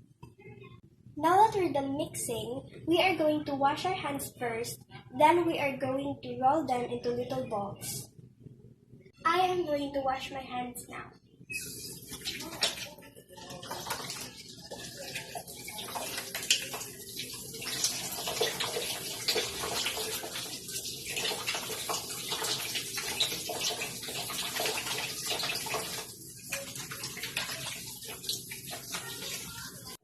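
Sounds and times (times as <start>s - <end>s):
tap water splashing on hands: 12.1s - 12.9s, 13.6s - 29.5s.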